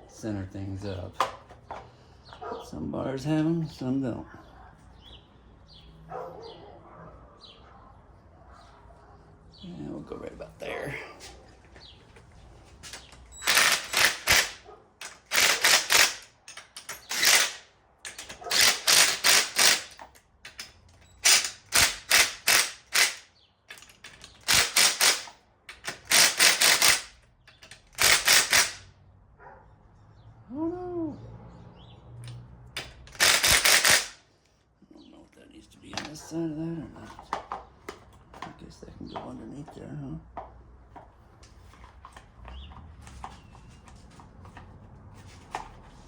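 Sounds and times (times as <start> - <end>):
ratchet wrench clicking: 13.3 - 28.9, 32.2 - 34.2.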